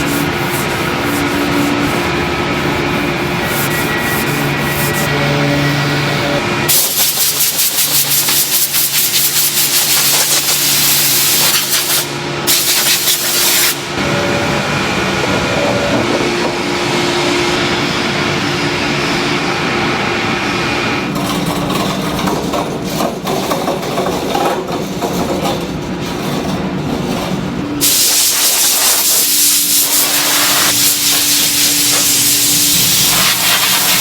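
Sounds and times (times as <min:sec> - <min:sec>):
machinery humming: 0:00.0 - 0:28.1, 0:29.3 - 0:34.0
pulsing air hiss: 0:06.7 - 0:13.8, 0:27.8 - 0:34.0.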